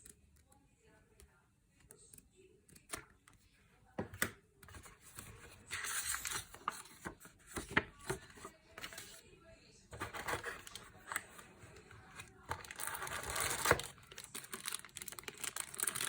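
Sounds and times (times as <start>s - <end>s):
packaging clicks and knocks: 12.2s - 16.0s
packaging rustling and tearing: 12.2s - 16.0s.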